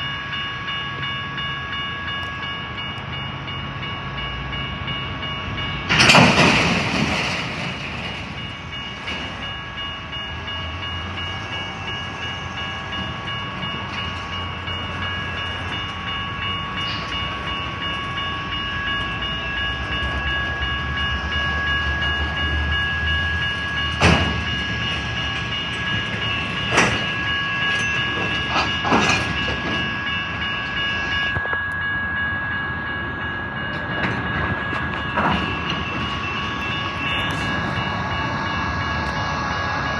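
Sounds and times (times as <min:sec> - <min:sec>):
diesel locomotive rumbling: 0:00.0 - 0:39.9
sharp clanks: 0:05.9 - 0:08.5.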